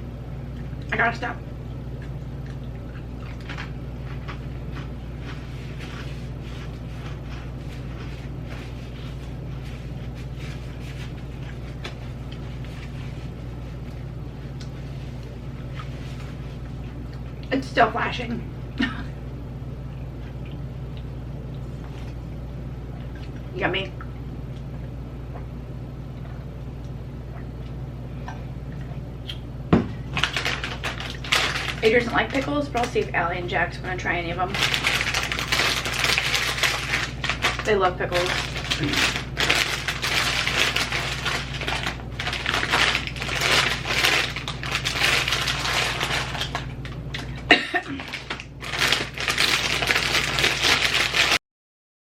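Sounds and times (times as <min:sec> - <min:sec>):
low room hum: 0:00.0 - 0:51.4
potato chips being chewed: 0:01.9 - 0:09.2, 0:30.1 - 0:33.0, 0:34.5 - 0:51.4.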